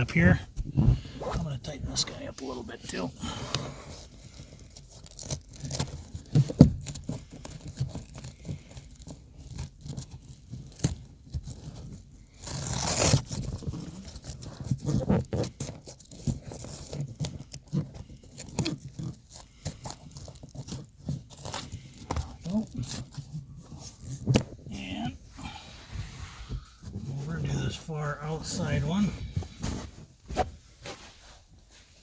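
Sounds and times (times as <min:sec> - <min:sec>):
velcro rasping: 0:03.2 - 0:24.8
fabric rustling: 0:20.8 - 0:32.0.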